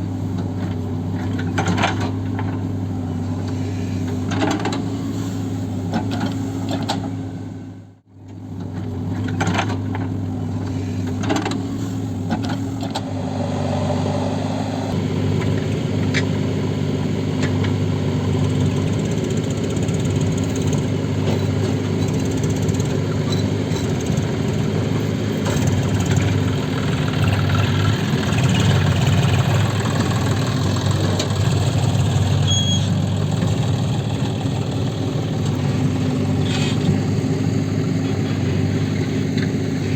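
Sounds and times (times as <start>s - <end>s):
heavy diesel engine running: 10.0s - 39.9s.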